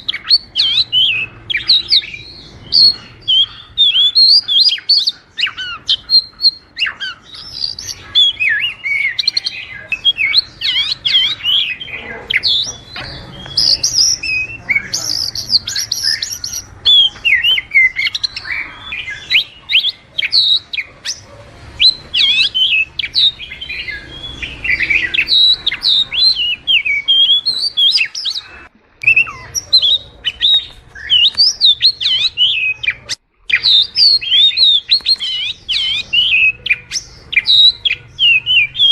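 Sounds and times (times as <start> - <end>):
bird singing whistles and chirps: 0.0 - 38.9.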